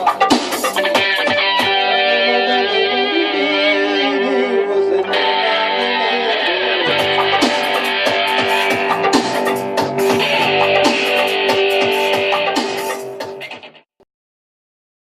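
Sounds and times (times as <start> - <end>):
electro-techno music with guitar: 0.0 - 13.9
low bass line: 6.8 - 10.8.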